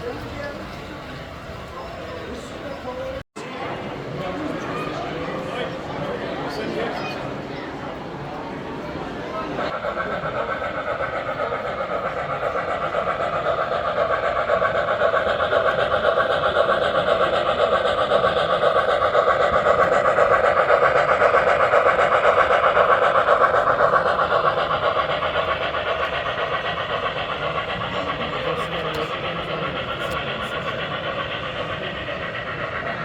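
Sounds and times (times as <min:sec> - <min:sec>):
model train wheels clattering on rails: 0:09.6 - 0:33.0.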